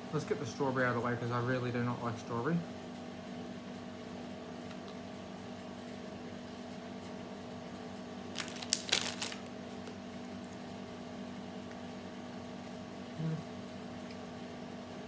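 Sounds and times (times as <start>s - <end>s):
steady background hum: 0.0s - 15.0s
plastic packet crinkling: 8.3s - 10.0s.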